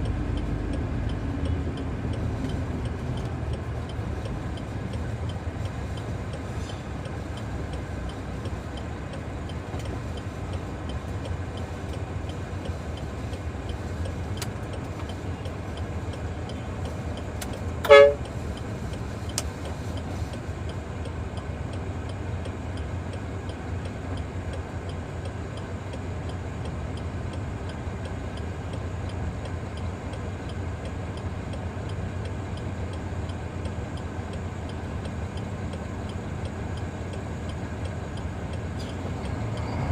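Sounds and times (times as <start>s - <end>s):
heavy diesel engine running: 0.0s - 39.9s
short horn toot: 17.8s - 18.2s.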